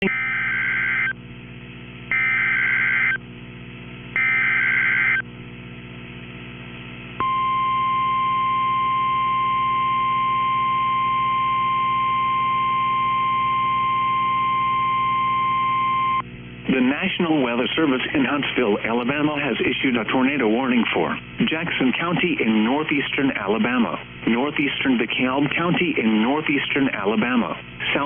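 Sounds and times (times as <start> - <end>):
harsh data bursts: 2.1 - 3.2, 4.2 - 5.2
single-pitch warning alarm tone: 2.1 - 3.2, 4.2 - 5.2, 7.2 - 16.2.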